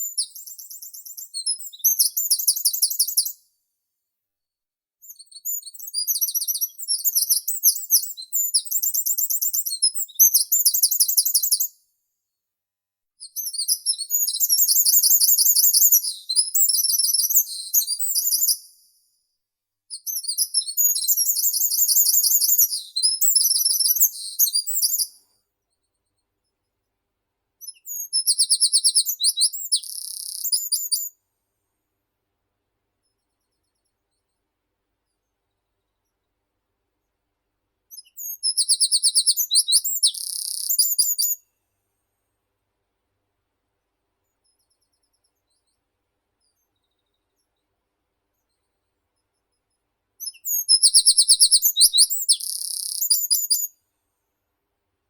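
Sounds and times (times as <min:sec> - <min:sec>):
songbird singing: 0:13.3 - 0:18.6, 0:20.0 - 0:25.1, 0:27.7 - 0:31.1, 0:37.9 - 0:41.4, 0:50.2 - 0:53.7.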